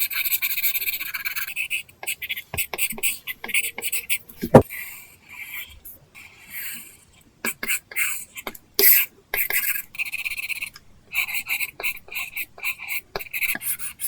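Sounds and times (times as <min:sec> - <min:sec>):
stylus scratching on a screen: 0:00.0 - 0:04.6, 0:09.4 - 0:14.0.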